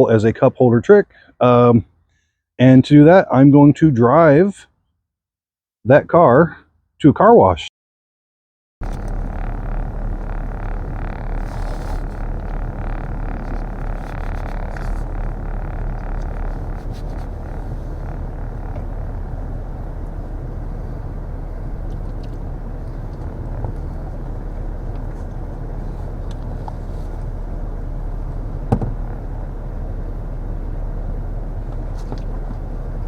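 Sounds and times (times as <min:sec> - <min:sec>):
car engine and road rumble: 0:08.8 - 0:33.0.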